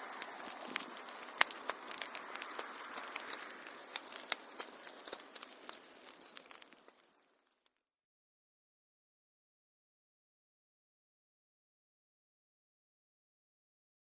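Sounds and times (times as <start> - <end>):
wood fire crackling: 0.0 - 7.8.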